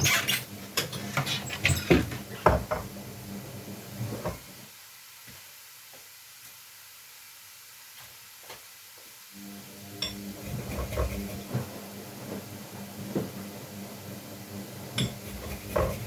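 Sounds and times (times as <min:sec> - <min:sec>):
pots and utensils clattering: 0:00.0 - 0:02.9, 0:10.0 - 0:11.7, 0:14.9 - 0:16.0
steady low hum: 0:09.4 - 0:16.0.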